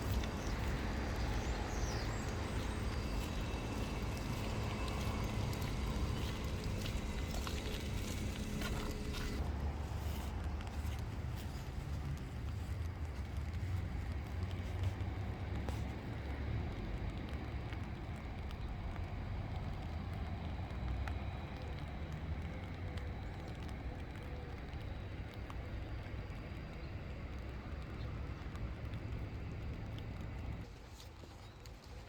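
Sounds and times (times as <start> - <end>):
wind buffeting microphone: 0.0 - 19.6.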